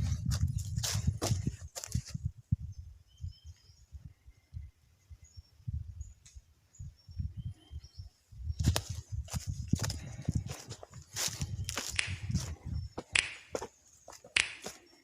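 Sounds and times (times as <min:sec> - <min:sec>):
small birds chirping: 0:00.4 - 0:15.0.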